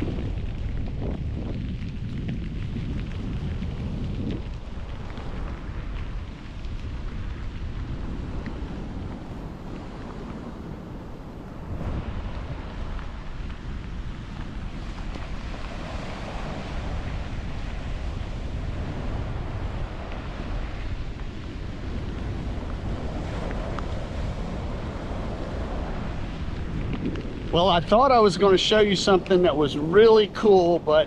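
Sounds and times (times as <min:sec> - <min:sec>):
wind rumbling on microphone: 0:00.0 - 0:31.0
ocean waves breaking: 0:07.8 - 0:31.0.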